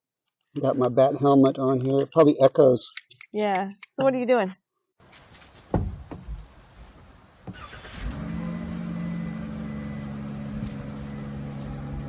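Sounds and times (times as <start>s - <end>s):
light knocks: 5.7s - 6.5s.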